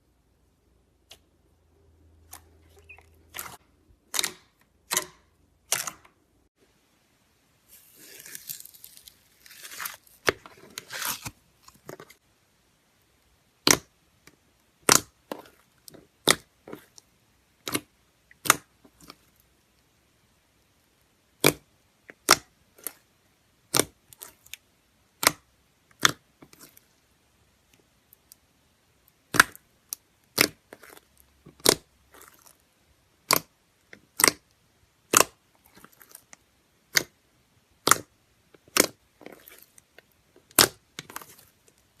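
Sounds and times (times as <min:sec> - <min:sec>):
slime clicking and popping: 0:13.6 - 0:16.5, 0:21.4 - 0:23.0, 0:25.2 - 0:26.8, 0:29.3 - 0:32.6, 0:33.2 - 0:36.3, 0:36.9 - 0:37.2, 0:37.8 - 0:39.7, 0:40.5 - 0:41.5.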